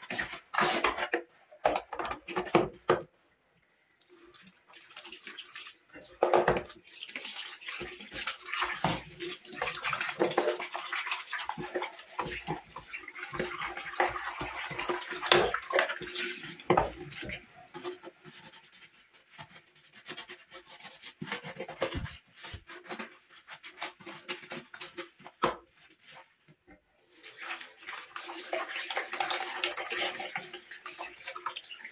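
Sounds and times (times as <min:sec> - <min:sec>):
water sounds: 0:03.6 - 0:18.3.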